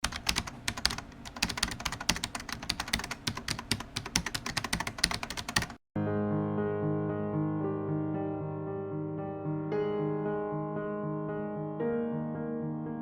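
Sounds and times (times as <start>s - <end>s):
keyboard typing clicks: 0.0s - 5.8s
music with sustained keyboard notes: 6.0s - 13.0s.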